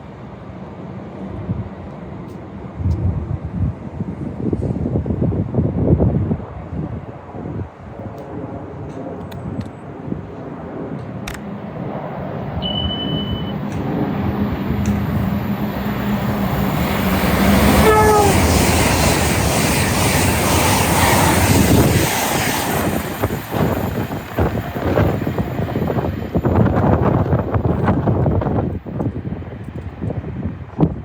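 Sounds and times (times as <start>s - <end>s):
train rushing past: 11.4s - 29.4s
train horn toot: 17.6s - 18.6s.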